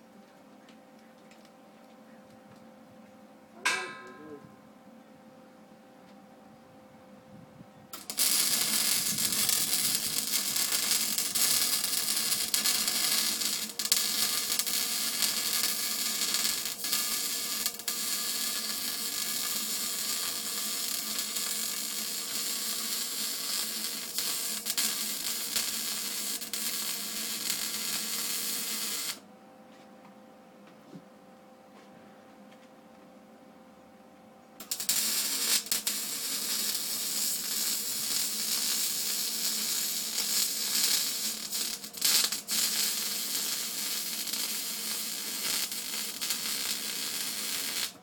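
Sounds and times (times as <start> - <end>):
faint steady hum: 0.0 - 48.0
welding arc crackling and hissing: 7.9 - 29.2, 34.6 - 48.0.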